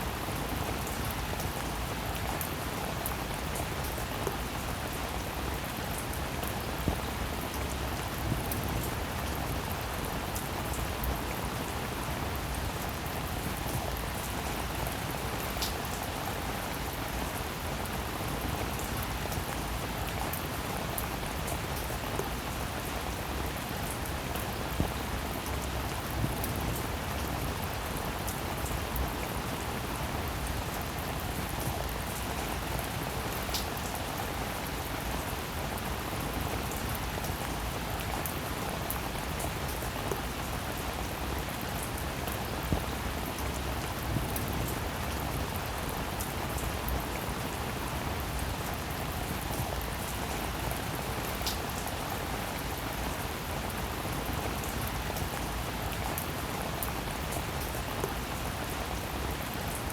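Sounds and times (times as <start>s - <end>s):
steady rain hiss: 0.0s - 59.9s.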